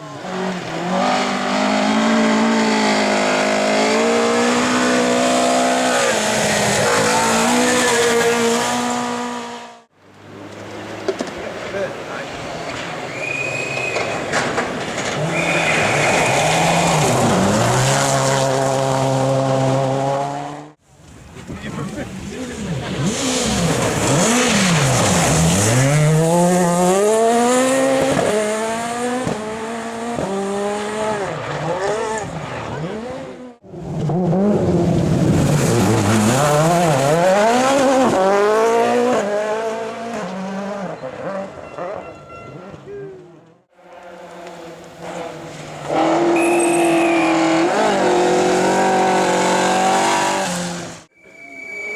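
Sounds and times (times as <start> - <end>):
rally car engine revving: 0.0 - 20.8, 21.4 - 51.1
tyres rushing on gravel: 10.4 - 19.2.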